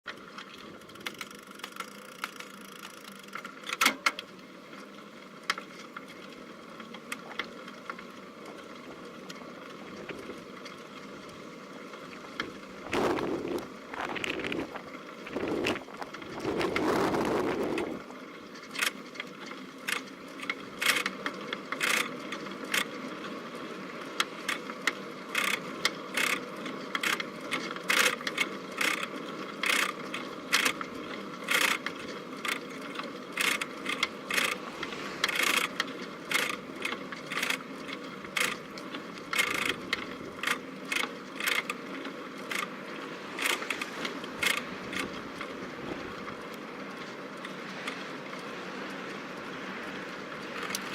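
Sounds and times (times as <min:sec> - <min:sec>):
wind: 0:00.0 - 0:50.9
bicycle tyres rumbling: 0:00.1 - 0:50.9
bike parts rattling: 0:12.3 - 0:18.0, 0:25.3 - 0:42.8.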